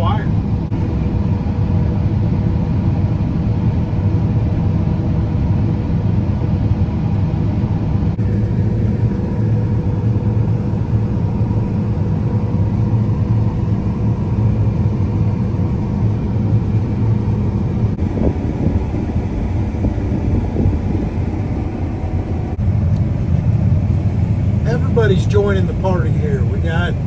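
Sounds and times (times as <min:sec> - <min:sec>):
combine harvester rumbling: 0:00.0 - 0:27.0
faint steady hum: 0:08.1 - 0:27.0.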